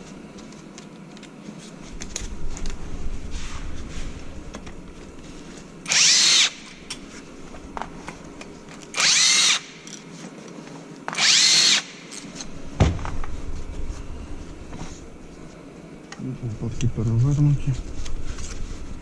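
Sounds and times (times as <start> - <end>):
power drill whining: 5.9 - 6.8, 8.9 - 9.8, 11.2 - 12.0
thump: 12.8 - 13.2.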